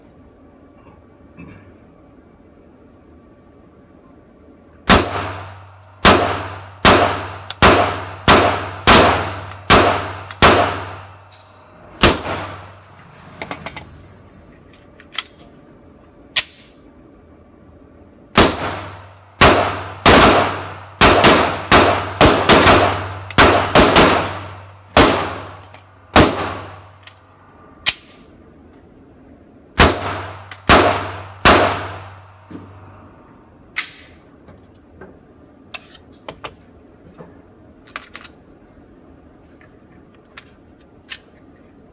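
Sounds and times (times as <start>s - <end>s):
pistol shots: 4.9s - 11.2s, 12.0s - 12.8s, 18.4s - 27.0s, 29.8s - 32.3s.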